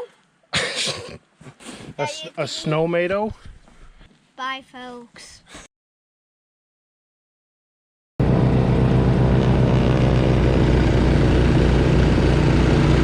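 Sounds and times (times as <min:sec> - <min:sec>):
snowblower engine running: 0:08.2 - 0:13.0.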